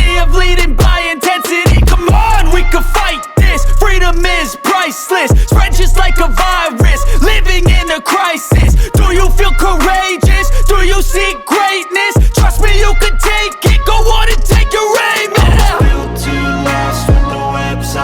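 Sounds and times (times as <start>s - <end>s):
rapping over hip-hop beat: 0.0s - 18.0s
deep bass hits: 1.7s - 4.4s, 15.4s - 16.1s.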